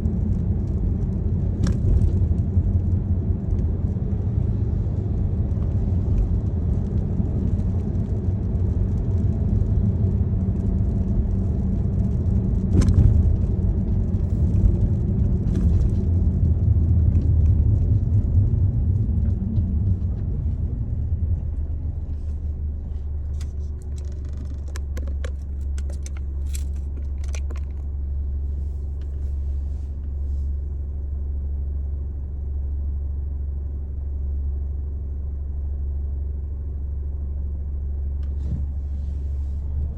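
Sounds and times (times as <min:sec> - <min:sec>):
car interior road noise: 0:00.0 - 0:39.9
light clicks and ticks: 0:23.4 - 0:27.9.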